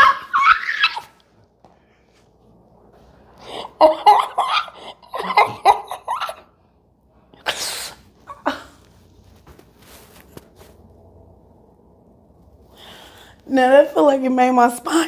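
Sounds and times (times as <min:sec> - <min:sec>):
person laughing: 0:03.6 - 0:06.4.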